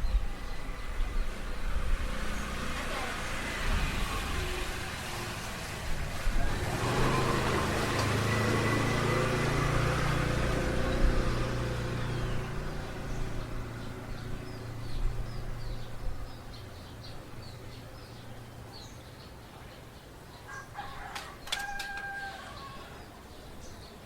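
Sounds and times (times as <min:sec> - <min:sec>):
small birds chirping: 0:00.0 - 0:05.8, 0:06.5 - 0:24.0
vehicle engine passing by: 0:00.0 - 0:19.0.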